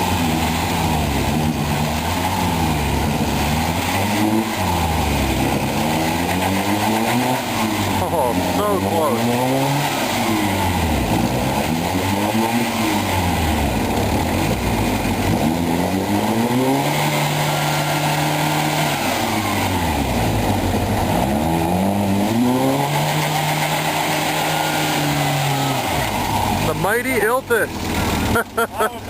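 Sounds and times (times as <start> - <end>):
engine revving: 0.0 - 29.0.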